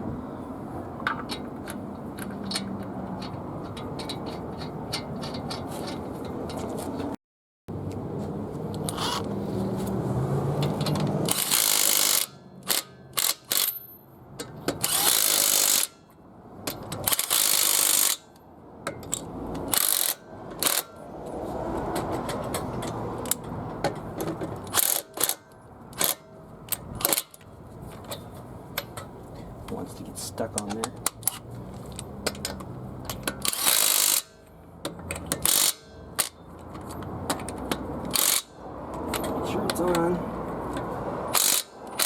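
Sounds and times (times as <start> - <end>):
impact wrench hammering: 32.2 - 36.4, 37.3 - 38.6, 40.8 - 42.0.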